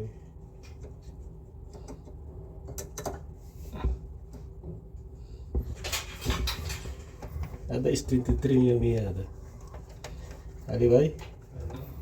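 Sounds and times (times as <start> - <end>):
low steady hum: 0.0 - 12.0
hard parts clicking and knocking: 5.5 - 12.0.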